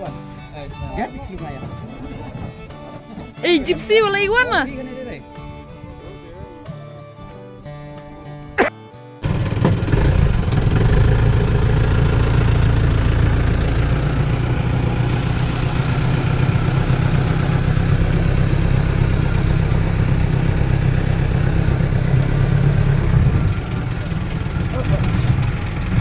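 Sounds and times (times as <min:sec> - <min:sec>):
vehicle engine rumbling: 0:08.6 - 0:26.0.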